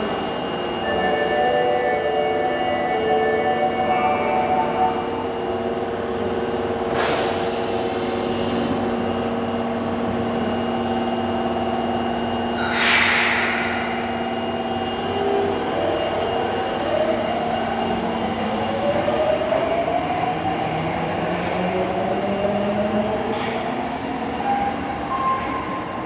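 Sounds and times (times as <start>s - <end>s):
train electrical hum: 0.0s - 19.2s
air release hisses: 12.6s - 15.0s.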